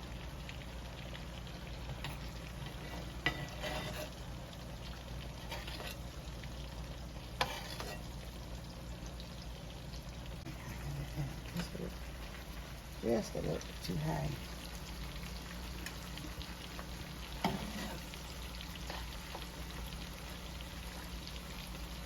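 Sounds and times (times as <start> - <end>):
meat sizzling in a frying pan: 0.0 - 22.0.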